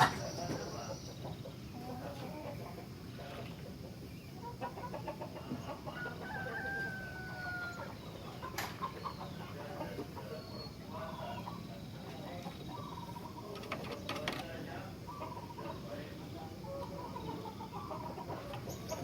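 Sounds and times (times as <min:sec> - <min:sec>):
bird chirps and clucks: 0:00.0 - 0:19.0
rooster crowing: 0:05.8 - 0:08.0.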